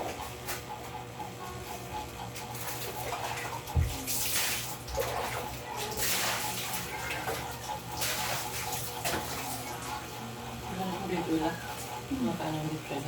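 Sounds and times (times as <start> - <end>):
water pouring and splashing: 2.5 - 10.0.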